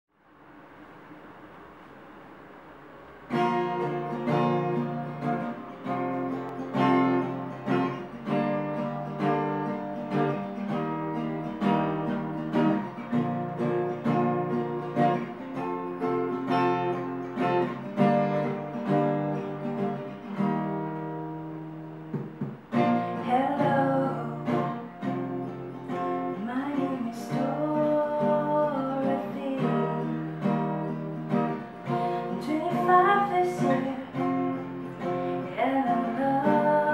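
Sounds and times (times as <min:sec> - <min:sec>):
acoustic guitar strumming: 0:02.7 - 0:36.9
person singing: 0:23.1 - 0:24.9, 0:26.3 - 0:30.4, 0:32.1 - 0:34.6, 0:35.4 - 0:36.9.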